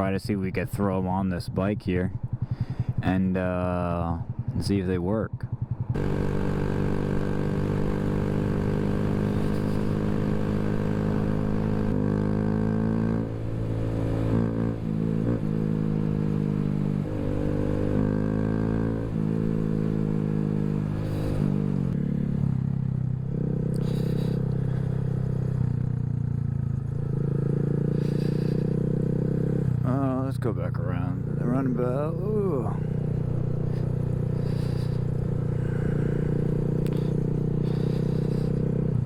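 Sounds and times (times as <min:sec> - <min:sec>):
motorcycle engine running: 0:00.0 - 0:39.0.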